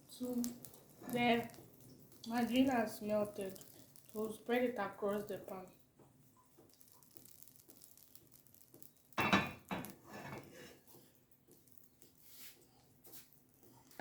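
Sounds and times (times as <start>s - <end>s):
utensil scraping frying pan: 8.9s - 11.2s.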